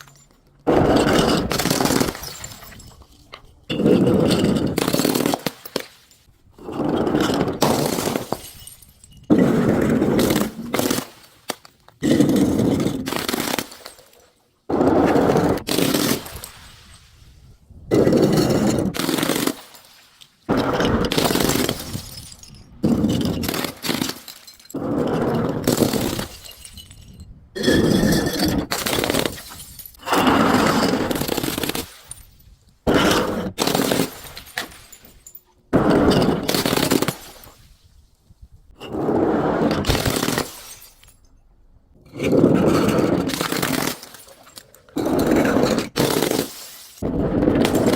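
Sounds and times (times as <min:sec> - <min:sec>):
glass bottles shattering: 0:00.0 - 0:06.3, 0:07.2 - 0:14.3, 0:20.8 - 0:30.1, 0:33.5 - 0:37.7, 0:39.8 - 0:41.5, 0:43.1 - 0:47.0, 0:47.6 - 0:47.9.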